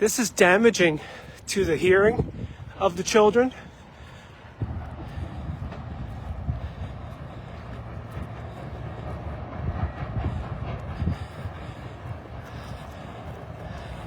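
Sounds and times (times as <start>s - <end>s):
person speaking: 0.0s - 3.6s
low industrial rumble and drone: 0.0s - 14.0s.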